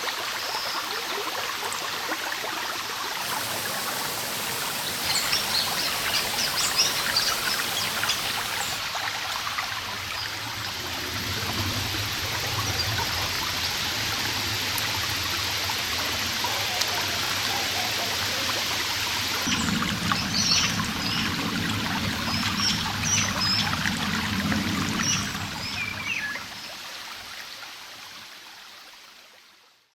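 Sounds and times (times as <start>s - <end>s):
stream running water: 0.0s - 29.9s
birds chirping and trilling: 3.2s - 8.8s.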